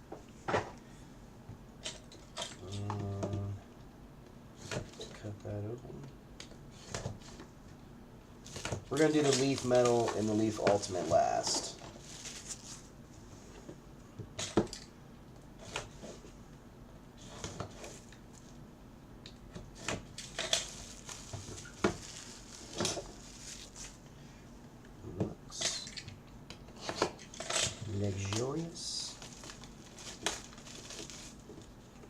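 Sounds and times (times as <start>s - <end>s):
card boxes handled and opened: 8.5s - 12.8s.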